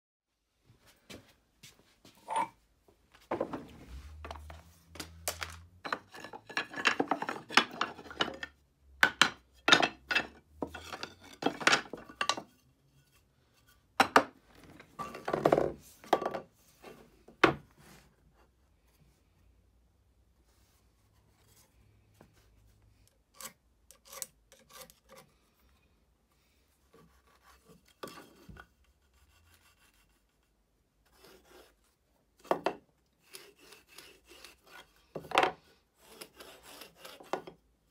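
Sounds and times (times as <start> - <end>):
hand tool scraping wood: 3.8 - 8.5, 9.6 - 13.9, 23.3 - 25.4, 31.1 - 31.8, 33.2 - 37.6.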